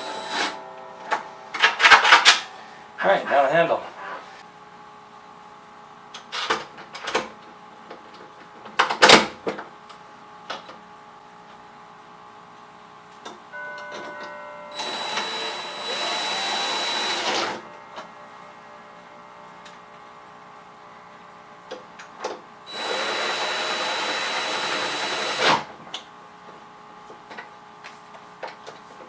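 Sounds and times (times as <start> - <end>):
cordless drill whirring: 0.0 - 0.6, 14.7 - 17.6, 22.7 - 25.7.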